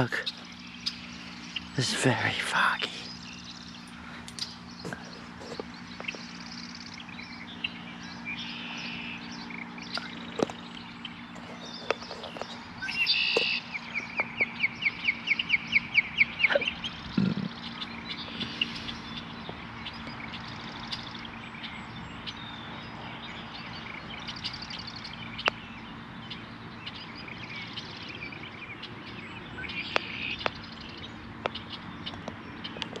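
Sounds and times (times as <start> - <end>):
birds chirping and trilling: 0.0 - 33.0
outdoor background hum: 0.0 - 33.0.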